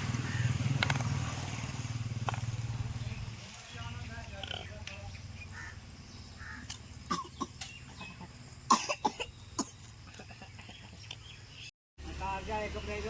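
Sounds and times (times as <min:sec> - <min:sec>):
person coughing: 0:07.1 - 0:07.7, 0:08.7 - 0:09.8.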